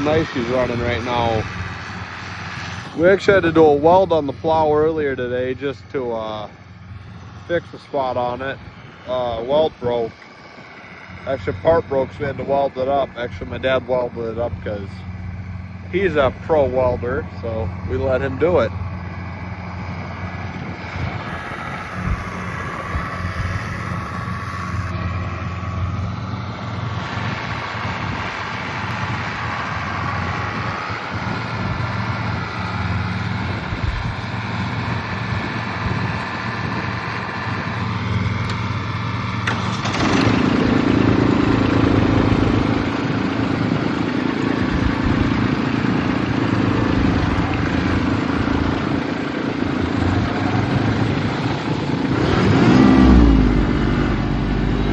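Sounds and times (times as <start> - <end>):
deeper drone: 18.8 - 26.8, 50.2 - 54.9.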